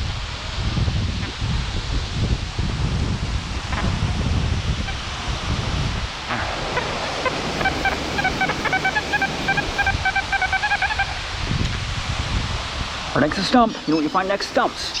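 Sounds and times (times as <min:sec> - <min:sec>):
strong wind through trees: 0:00.0 - 0:15.0
short rapid beeps: 0:07.5 - 0:10.0.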